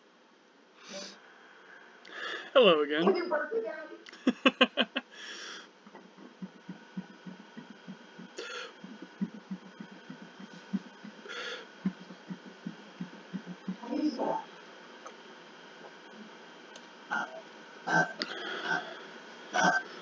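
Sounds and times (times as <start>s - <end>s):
person breathing or sniffing: 0.8s - 1.2s, 5.1s - 5.7s, 11.3s - 11.7s
faint ticking: 5.8s - 14.0s.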